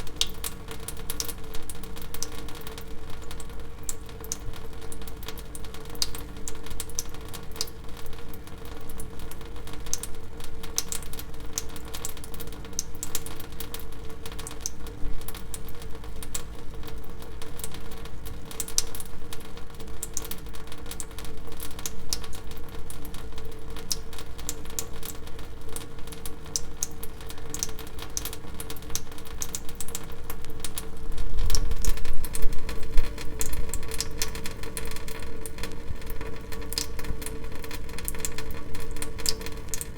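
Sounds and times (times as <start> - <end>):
water dripping: 0.0 - 39.9.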